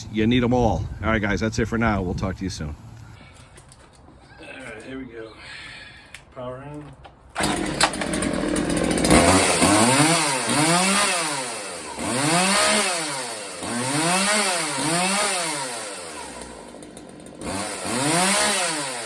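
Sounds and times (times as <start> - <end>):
chainsaw revving: 7.4 - 19.0.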